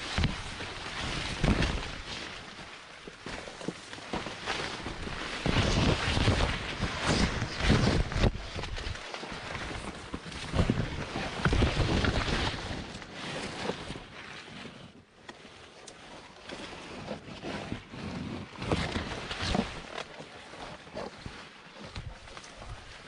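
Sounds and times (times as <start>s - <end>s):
wind buffeting microphone: 4.9s - 12.8s.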